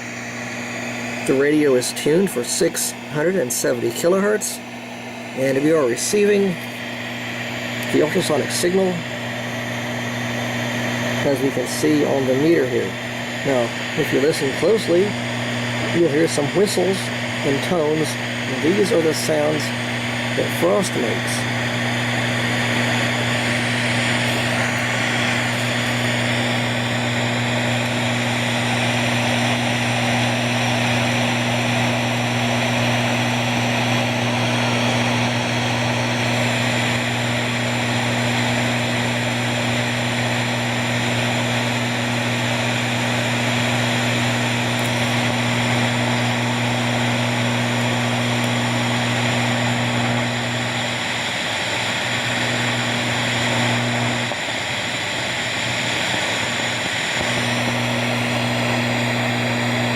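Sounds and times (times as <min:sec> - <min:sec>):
radio static hiss: 0:00.0 - 0:59.9
steady hum: 0:00.0 - 0:59.9.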